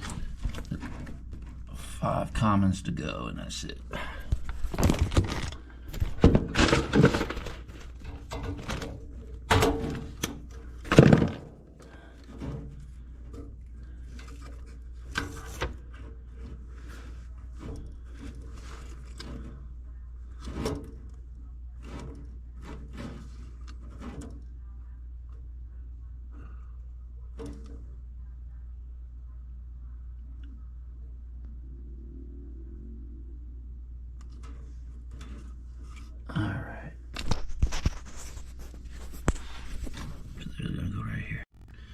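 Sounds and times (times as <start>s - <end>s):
wire terminals knocks and clicks: 0.0s - 1.7s, 4.2s - 19.7s.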